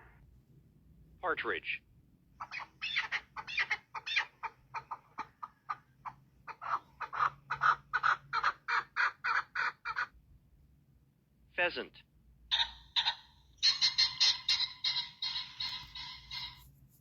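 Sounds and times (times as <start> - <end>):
partridge clucking calls: 2.4 - 10.2, 12.5 - 16.6.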